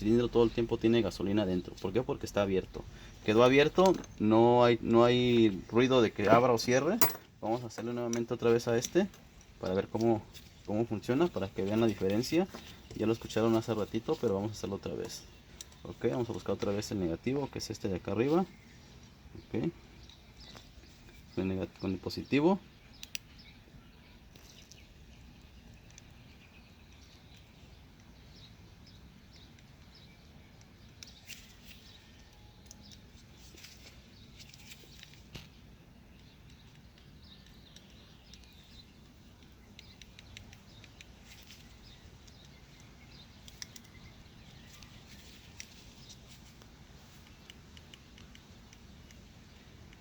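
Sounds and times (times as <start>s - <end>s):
small clicks and taps: 22.9s - 23.4s, 34.4s - 50.0s.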